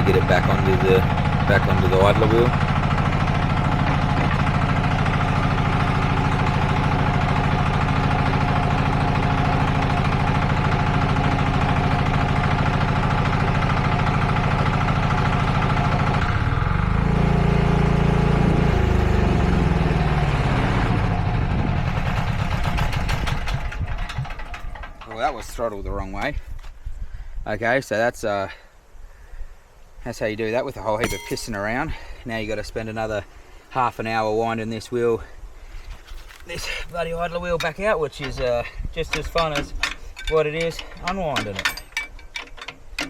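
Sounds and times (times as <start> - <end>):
skid steer engine running: 0.0 - 25.0.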